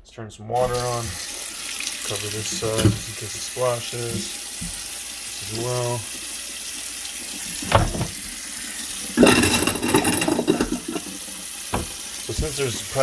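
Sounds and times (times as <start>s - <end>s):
faucet running into sink: 0.6s - 13.0s
rattling clatter in sink: 2.5s - 3.2s, 7.5s - 8.3s, 9.1s - 12.4s.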